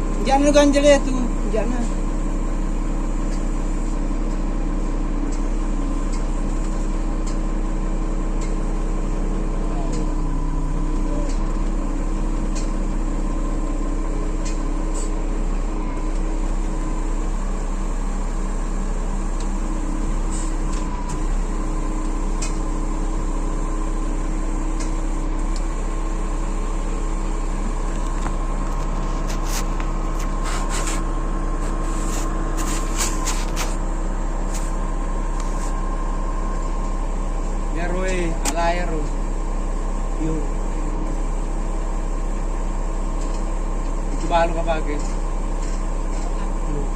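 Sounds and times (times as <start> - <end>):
heavy equipment engine running: 0.0 - 46.9.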